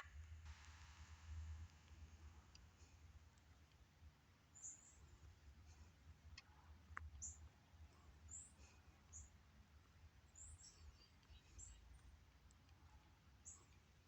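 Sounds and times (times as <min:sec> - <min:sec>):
low hum: 0:00.0 - 0:14.0
faint high-pitched chirps: 0:04.5 - 0:05.9, 0:07.0 - 0:09.4, 0:10.2 - 0:14.0.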